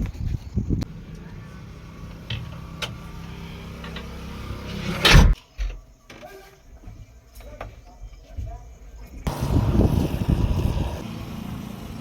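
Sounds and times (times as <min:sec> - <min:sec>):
diesel engine running: 0:00.8 - 0:05.4, 0:09.3 - 0:12.0.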